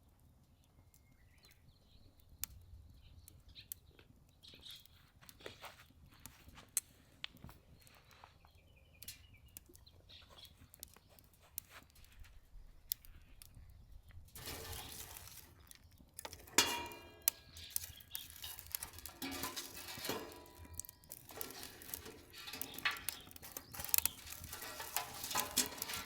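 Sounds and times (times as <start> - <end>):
wood fire crackling and popping: 0.2 - 26.0
bird chirps: 1.0 - 5.0, 7.8 - 11.2.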